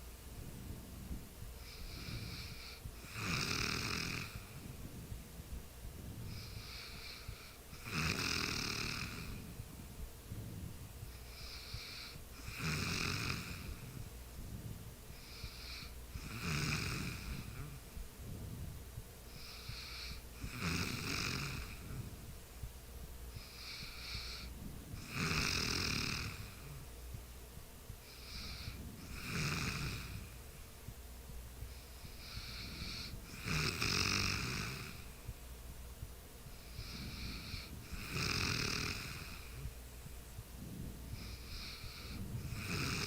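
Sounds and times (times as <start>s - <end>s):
soft breathing: 0.0s - 43.0s
person snoring: 1.6s - 4.6s, 6.3s - 9.6s, 11.3s - 14.0s, 15.1s - 17.8s, 19.4s - 22.1s, 23.4s - 26.8s, 28.1s - 30.4s, 31.8s - 35.1s, 36.6s - 39.7s, 41.1s - 43.0s.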